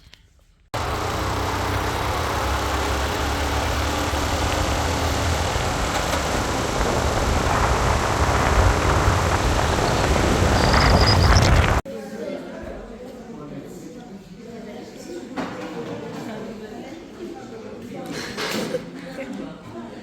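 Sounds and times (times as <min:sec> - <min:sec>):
vehicle engine and road noise: 0:00.8 - 0:11.8.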